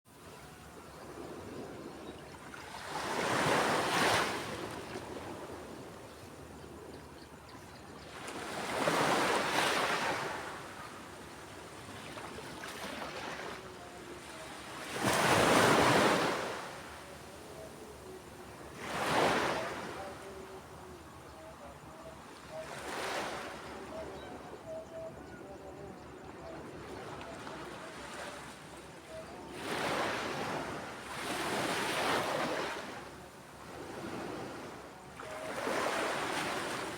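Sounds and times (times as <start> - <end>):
ocean waves breaking: 1.1 - 6.9, 11.8 - 23.8.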